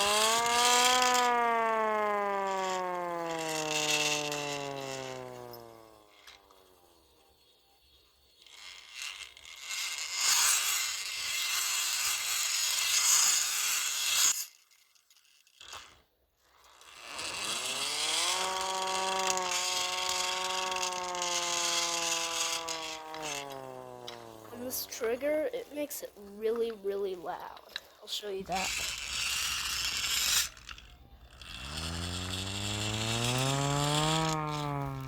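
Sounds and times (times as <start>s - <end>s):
siren wail: 0.0s - 6.6s
hand-cranked siren rotor whirring: 0.0s - 35.0s.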